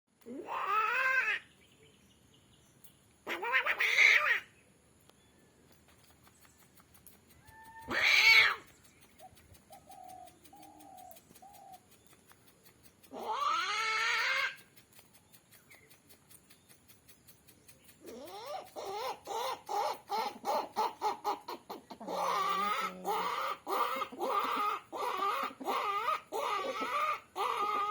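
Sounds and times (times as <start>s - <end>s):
rooster-like calls: 7.4s - 8.7s, 13.1s - 14.6s, 18.1s - 27.9s.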